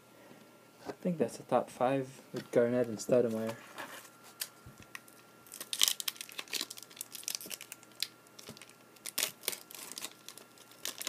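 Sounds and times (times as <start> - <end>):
card pack wrapper crinkling: 4.3 - 11.0.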